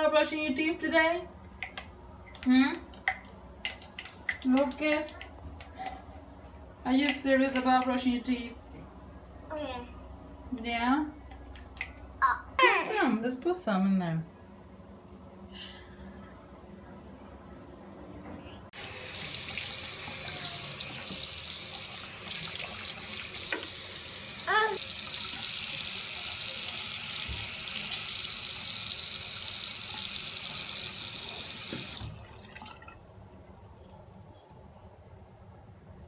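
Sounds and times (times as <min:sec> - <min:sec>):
tap running into a sink: 0:22.3 - 0:23.8, 0:31.4 - 0:32.2.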